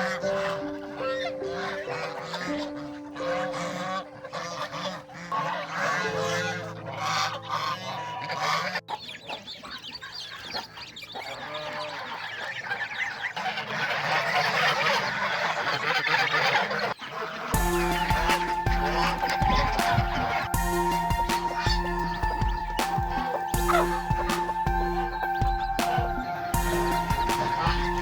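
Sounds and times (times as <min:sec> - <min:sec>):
chorus of birds calling: 0:00.0 - 0:28.0
fowl calling: 0:00.0 - 0:28.0
geese honking: 0:00.0 - 0:28.0
soft held music notes: 0:17.5 - 0:28.0.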